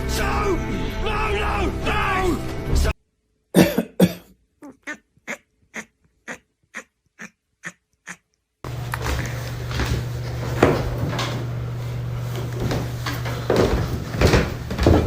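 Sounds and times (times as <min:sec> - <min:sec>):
pet animal calling: 0:04.6 - 0:08.4.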